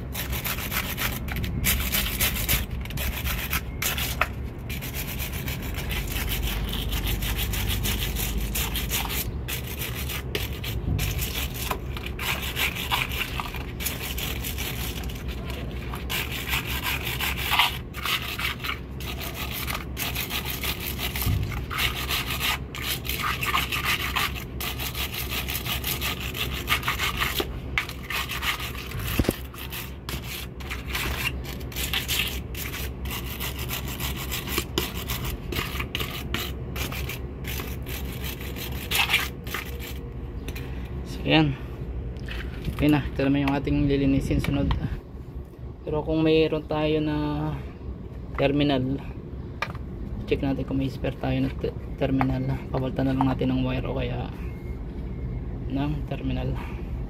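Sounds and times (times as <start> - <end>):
wire brush scrubbing metal: 0.0 - 40.0.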